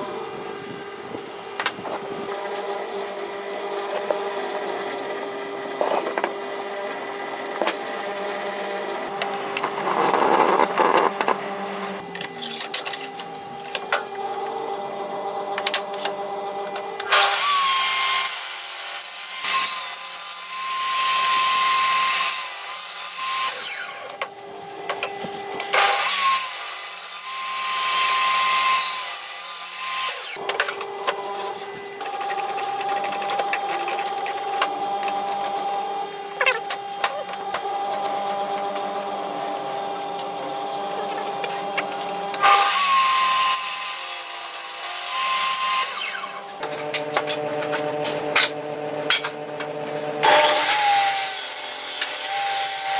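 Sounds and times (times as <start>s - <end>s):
power tool running: 16.8s - 24.3s, 25.6s - 52.9s
power tool cutting into wood: 17.0s - 24.2s, 25.6s - 30.5s, 42.3s - 49.2s, 50.2s - 52.9s.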